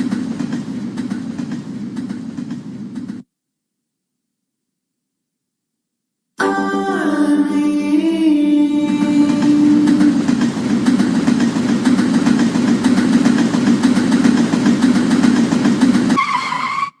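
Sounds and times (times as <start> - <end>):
underground train rumbling: 0.0 - 3.2, 8.4 - 17.0
fast even clicking: 8.9 - 16.2.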